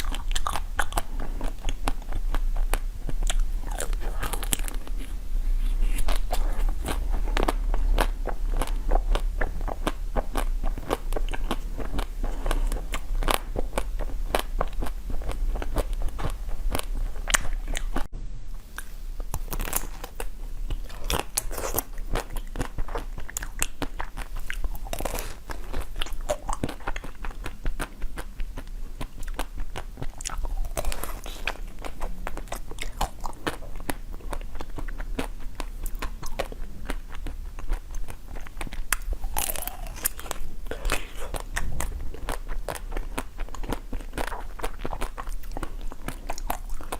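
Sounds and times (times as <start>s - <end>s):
crunchy food chewing: 0.0s - 18.1s, 18.7s - 46.9s
low hum: 0.0s - 21.6s.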